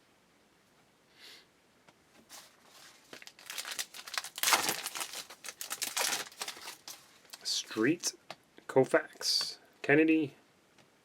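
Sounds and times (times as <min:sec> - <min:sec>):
foil wrapper crinkling: 0:02.3 - 0:08.1.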